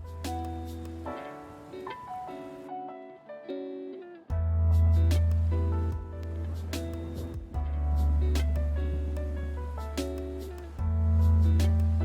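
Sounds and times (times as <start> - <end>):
plucked string music with bass: 3.5 - 12.0.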